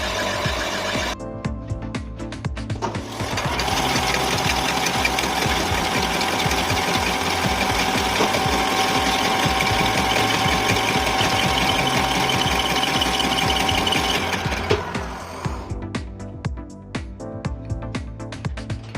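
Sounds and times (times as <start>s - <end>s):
lathe machining with ringing tone: 0.0s - 1.2s, 3.4s - 15.6s.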